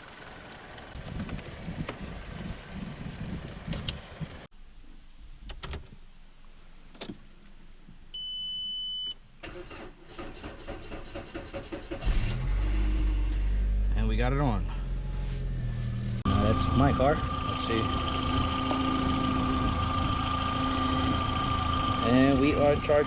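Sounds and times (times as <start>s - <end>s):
car engine cranking: 9.4s - 13.6s, 14.7s - 23.0s
steady beep: 14.7s - 22.3s
car engine running loudly: 16.3s - 23.0s.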